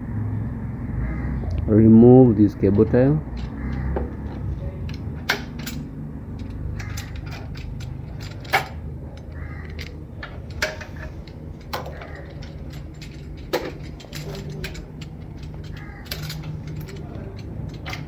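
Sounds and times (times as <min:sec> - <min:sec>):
steady low hum: 0:00.0 - 0:18.0
cable ties snapping: 0:02.8 - 0:18.0.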